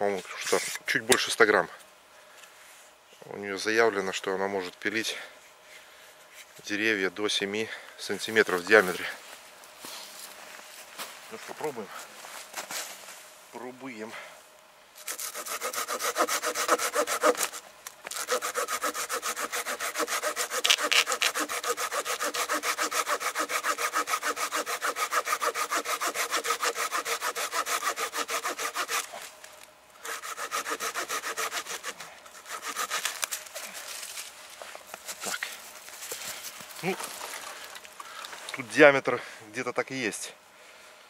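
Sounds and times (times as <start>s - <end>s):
hand saw cutting wood: 15.0s - 29.3s, 30.0s - 33.6s.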